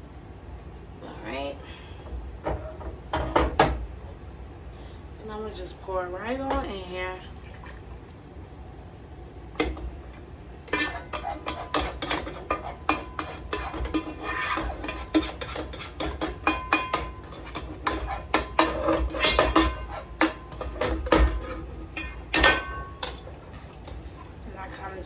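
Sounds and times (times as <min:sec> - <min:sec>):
metal cookware ringing: 0:10.3 - 0:25.0
utensil scraping metal pot: 0:10.6 - 0:25.0.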